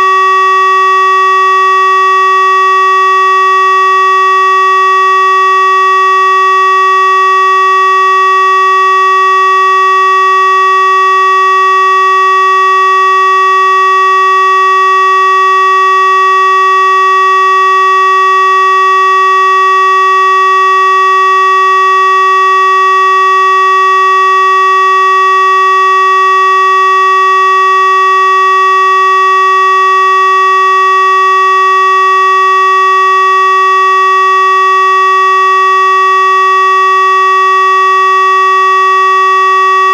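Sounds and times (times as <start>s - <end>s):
electronic warning siren steady tone: 0.0s - 39.9s.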